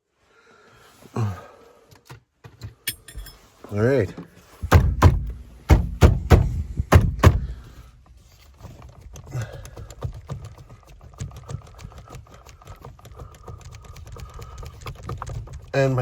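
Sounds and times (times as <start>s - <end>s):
heavy knocks on steering wheel: 4.6s - 7.8s
light clicks and rattles: 8.0s - 16.0s.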